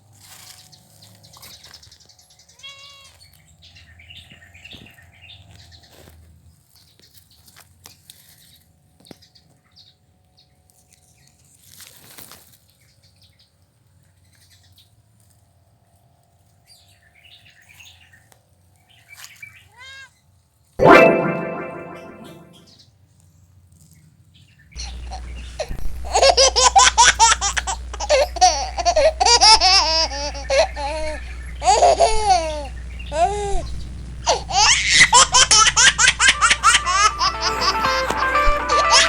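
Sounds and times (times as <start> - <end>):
cat chirping calls: 2.6 - 3.1.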